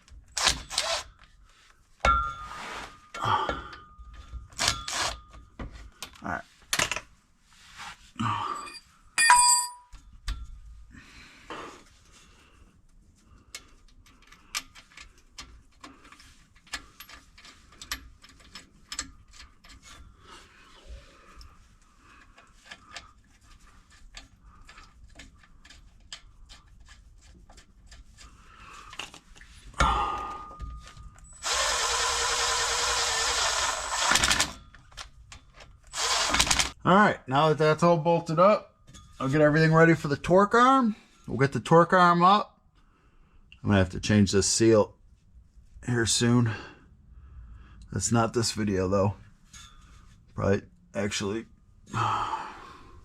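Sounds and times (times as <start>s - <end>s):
ringing metal clank: 2.0s - 2.6s, 8.6s - 10.0s
power tool running: 31.4s - 34.5s, 35.9s - 36.7s.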